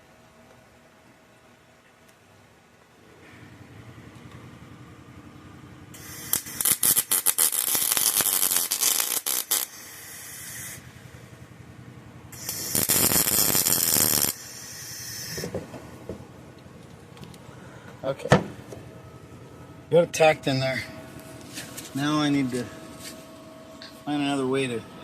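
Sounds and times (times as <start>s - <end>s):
welding arc crackle: 5.9s - 11.0s, 12.4s - 15.6s
low hum: 10.0s - 25.0s.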